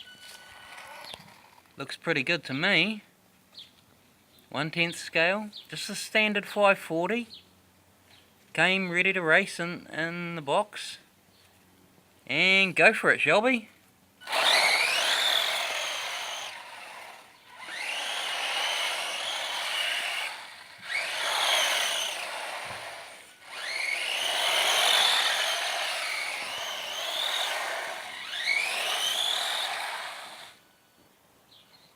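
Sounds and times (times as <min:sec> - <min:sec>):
rc car electric motor whining: 0:00.0 - 0:01.7, 0:14.2 - 0:30.7.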